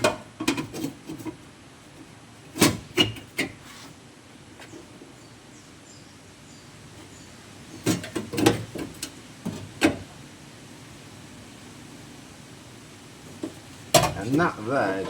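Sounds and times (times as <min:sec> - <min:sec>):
steel panel knocking and clanking: 0:07.8 - 0:10.0.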